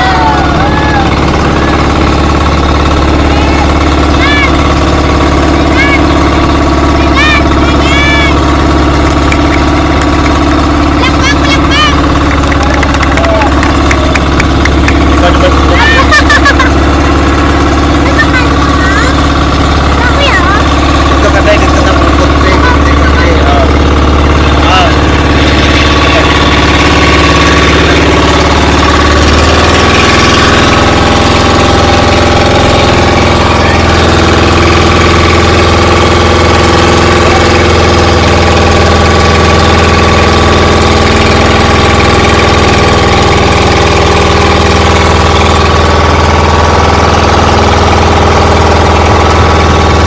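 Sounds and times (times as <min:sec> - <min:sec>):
loud engine running steadily: 0:00.0 - 0:50.0.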